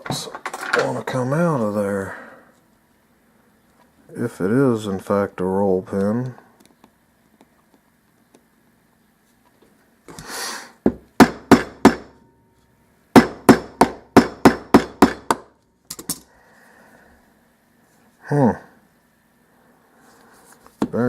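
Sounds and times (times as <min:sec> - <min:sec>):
metal-on-metal hammering: 0:10.9 - 0:12.3, 0:13.2 - 0:16.2.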